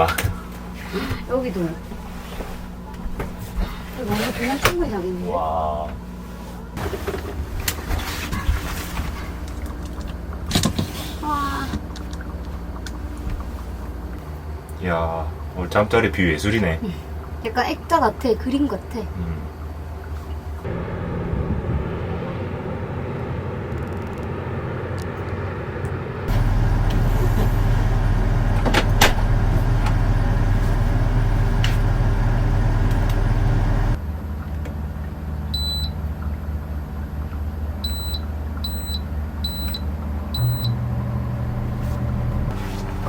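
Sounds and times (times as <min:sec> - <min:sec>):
motor vehicle running: 0:20.2 - 0:43.0
short high-pitched beeps: 0:35.6 - 0:36.0, 0:37.9 - 0:39.8, 0:40.4 - 0:40.8.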